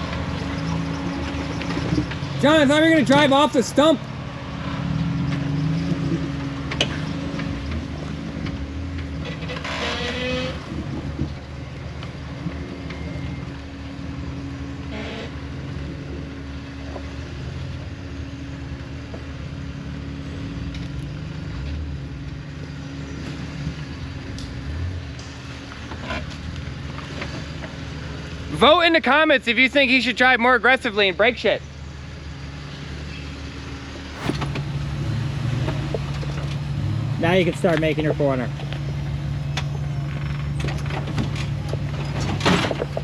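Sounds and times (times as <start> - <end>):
vehicle engine running at low revs: 33.2 - 43.0.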